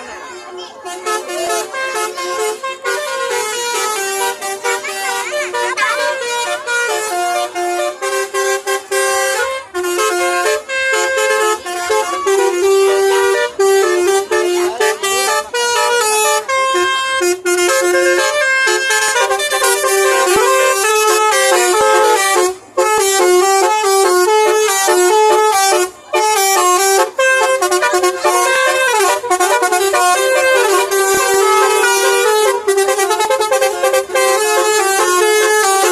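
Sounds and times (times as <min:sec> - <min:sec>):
musical bus air horns: 0:00.7 - 0:35.9.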